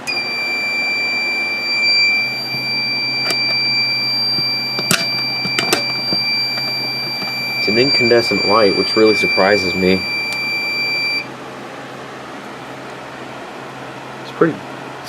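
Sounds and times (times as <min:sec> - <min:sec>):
alarm buzzer high-pitched tone: 0:00.0 - 0:11.3
low hum: 0:00.0 - 0:11.3.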